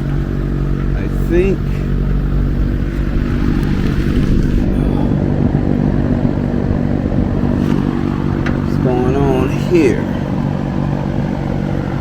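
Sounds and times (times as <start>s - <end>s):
loud fan humming: 0.0s - 12.0s.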